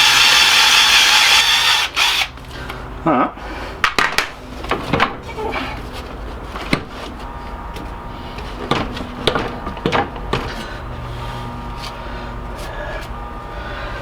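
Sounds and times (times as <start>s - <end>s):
electric drill running: 0.0s - 2.4s
sharp knocks: 8.6s - 10.6s.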